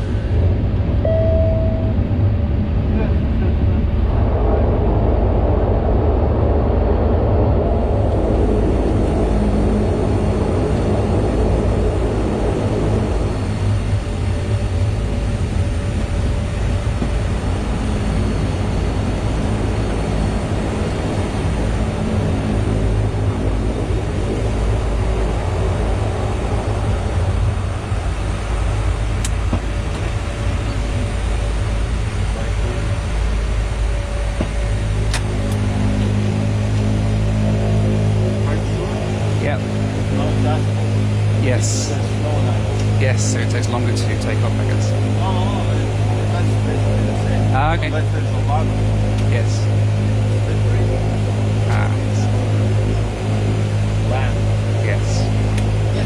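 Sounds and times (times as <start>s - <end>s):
turboprop engines droning: 0.0s - 56.0s.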